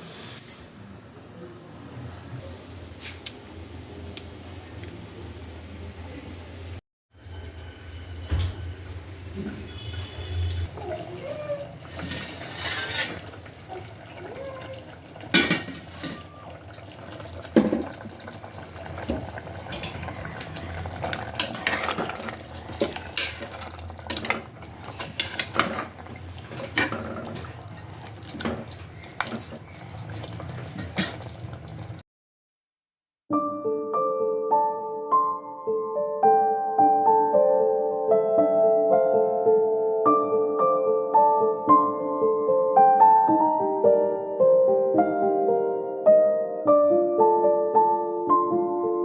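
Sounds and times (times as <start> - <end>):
utensils and dishes clinking: 11.8 - 13.6, 15.3 - 18.0, 18.9 - 31.6
soft piano music: 33.3 - 49.0.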